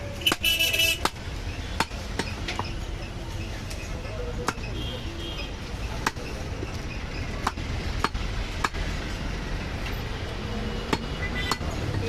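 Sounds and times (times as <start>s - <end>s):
cleaver chopping meat: 7.4s - 8.8s.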